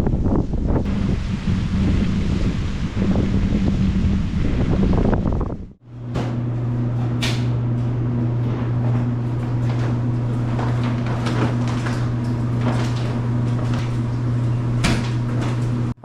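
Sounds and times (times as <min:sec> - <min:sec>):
washers and dryers humming: 0:00.0 - 0:16.0
machine doors clunking shut: 0:06.0 - 0:16.0.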